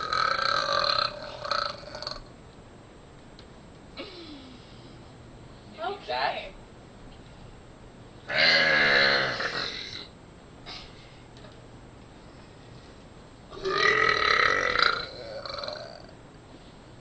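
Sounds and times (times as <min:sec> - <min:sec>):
loud burps: 0:00.0 - 0:02.3, 0:08.3 - 0:10.1, 0:13.5 - 0:16.2.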